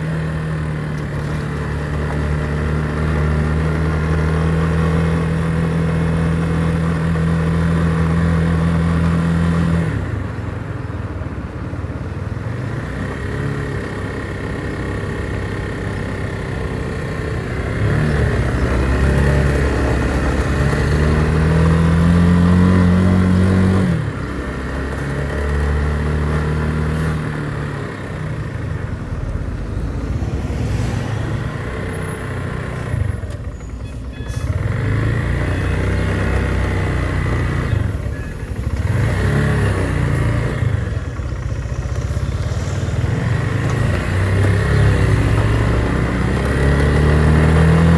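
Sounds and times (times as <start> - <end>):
road and wind noise: 0.0 - 47.9
motorcycle engine running: 31.3 - 47.9.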